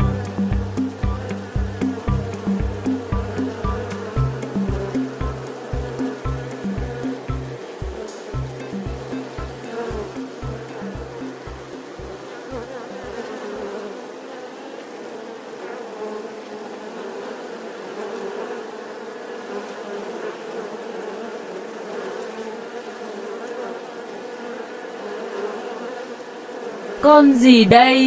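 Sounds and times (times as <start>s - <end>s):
low thumping beat: 0.0s - 13.2s
bees buzzing: 0.0s - 14.3s.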